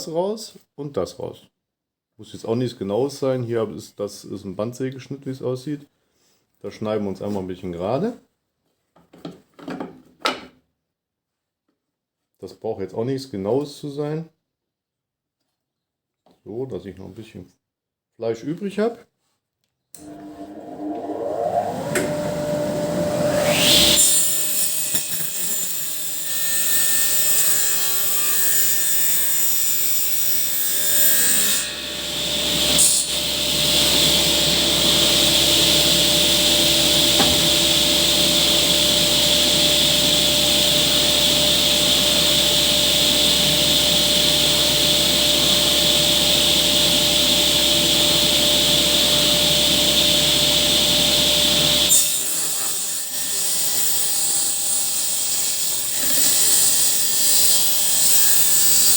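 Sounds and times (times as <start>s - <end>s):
table saw cutting plywood: 20.0s - 58.9s.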